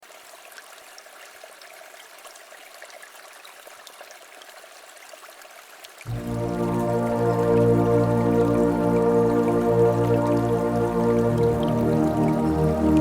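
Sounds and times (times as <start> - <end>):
water trickling and splashing: 0.0 - 13.0
river flowing: 0.8 - 13.0
ambient electronic music: 6.1 - 13.0.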